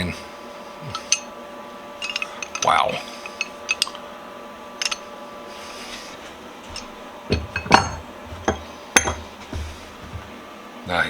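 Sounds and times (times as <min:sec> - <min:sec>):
metal tools clinking: 0:00.8 - 0:01.3, 0:02.0 - 0:04.1, 0:04.8 - 0:10.3
heavy metal knocks: 0:06.7 - 0:10.3.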